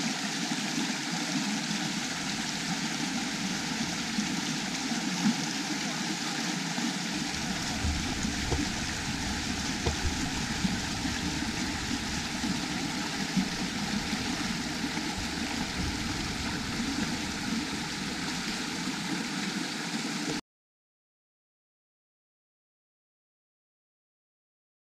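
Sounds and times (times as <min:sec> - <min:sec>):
running water: 0:00.0 - 0:20.4
soft low knocks: 0:02.0 - 0:05.0, 0:07.2 - 0:18.9.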